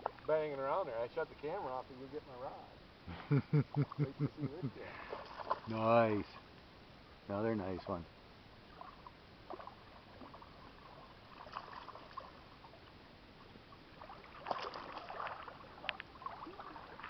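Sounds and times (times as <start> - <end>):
water splashing and trickling: 3.6 - 6.5, 8.6 - 17.0.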